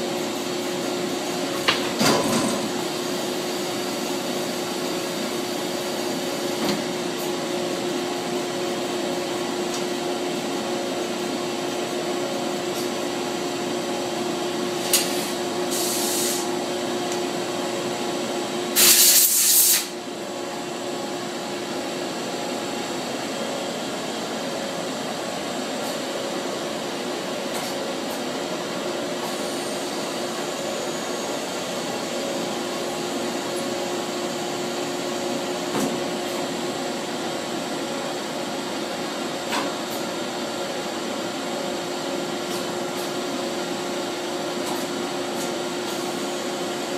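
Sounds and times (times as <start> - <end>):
loud blast of air hiss: 15.0 - 16.5, 18.7 - 20.0.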